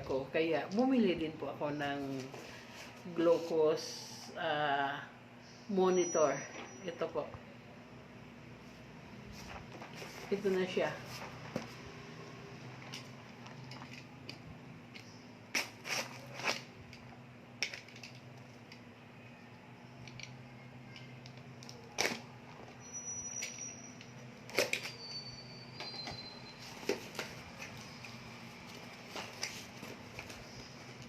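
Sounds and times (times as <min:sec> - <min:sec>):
faint low hum: 0:00.0 - 0:23.0
packaging clicks and rustles: 0:20.0 - 0:25.1, 0:25.8 - 0:31.0.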